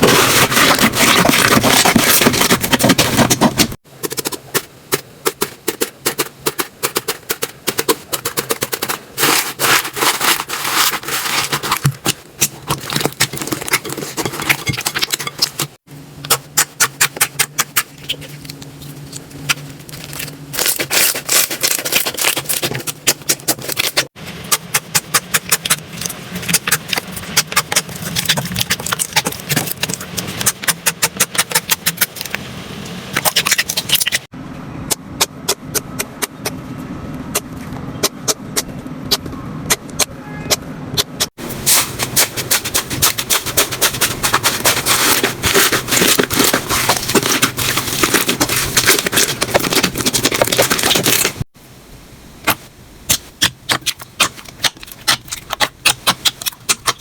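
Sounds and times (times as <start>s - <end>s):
slime crackling and popping: 41.6s - 51.5s, 52.5s - 57.0s.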